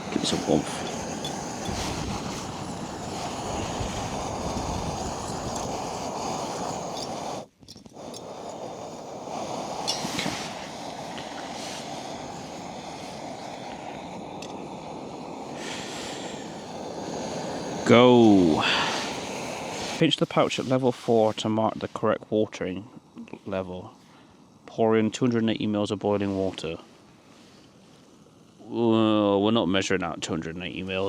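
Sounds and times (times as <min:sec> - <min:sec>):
gas stove burner hissing: 0:00.0 - 0:31.0.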